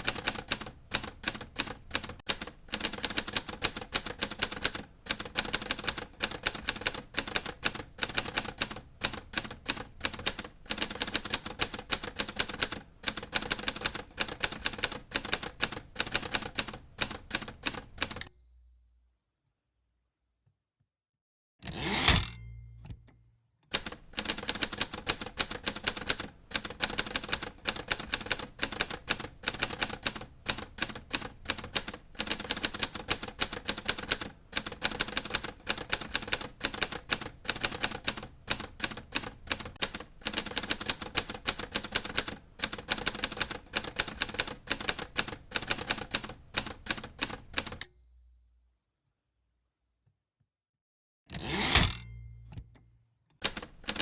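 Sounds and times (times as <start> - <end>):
typewriter clatter: 0.0 - 18.2, 23.7 - 47.8, 53.4 - 54.0
typewriter keys clacking: 0.0 - 18.2, 23.7 - 47.8, 53.4 - 54.0
typewriter bell ringing: 47.6 - 49.4.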